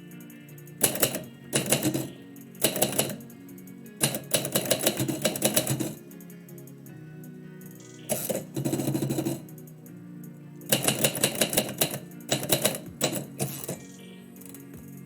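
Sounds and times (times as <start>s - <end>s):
background music sustained tones: 0.0s - 15.0s
typewriter keys typing: 0.8s - 3.3s, 4.0s - 6.0s, 8.1s - 9.4s, 10.7s - 13.8s.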